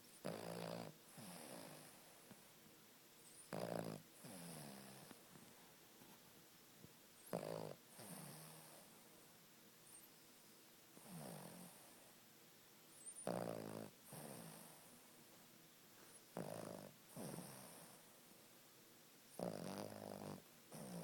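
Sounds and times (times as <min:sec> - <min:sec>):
dog snoring: 0:00.1 - 0:02.4, 0:03.3 - 0:05.2, 0:07.2 - 0:09.0, 0:11.0 - 0:12.1, 0:13.0 - 0:15.0, 0:16.3 - 0:18.1, 0:19.3 - 0:21.0.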